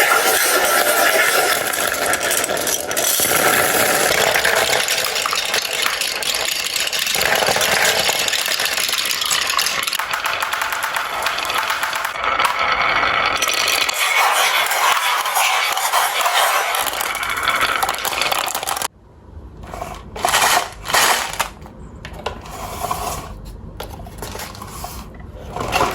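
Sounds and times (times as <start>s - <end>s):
marbles clattering down a run: 0.0s - 18.9s.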